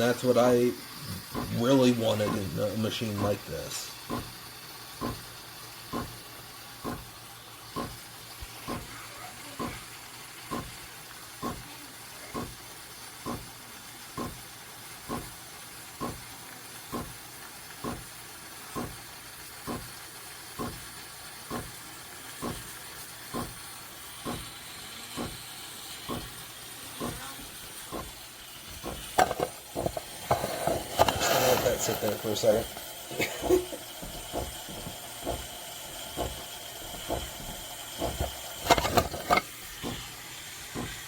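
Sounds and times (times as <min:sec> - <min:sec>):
steam wand hissing: 0:00.0 - 0:13.6, 0:14.2 - 0:41.0.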